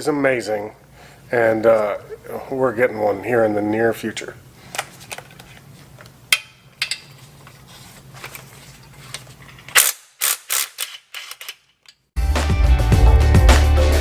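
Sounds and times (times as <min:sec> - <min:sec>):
music with heavy beat: 0:12.2 - 0:14.0.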